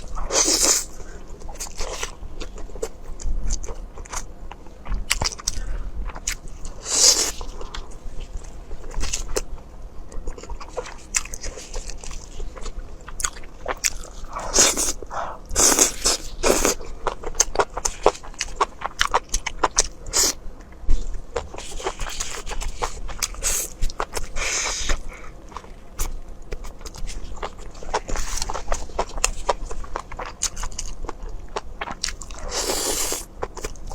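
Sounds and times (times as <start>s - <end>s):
chewing rice and noodles: 0.0s - 33.9s.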